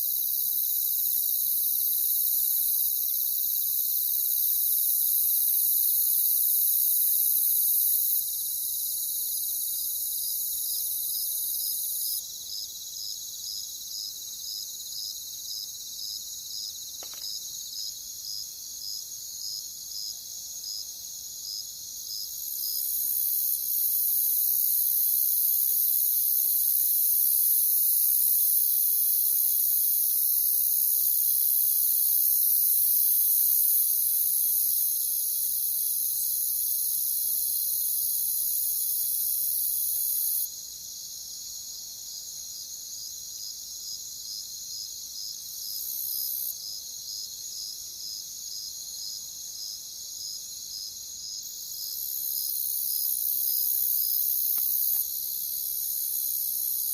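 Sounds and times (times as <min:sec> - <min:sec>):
crickets chirping chorus: 0:00.0 - 0:56.9
single cricket chirping: 0:00.0 - 0:56.9
faint click: 0:17.0 - 0:17.4.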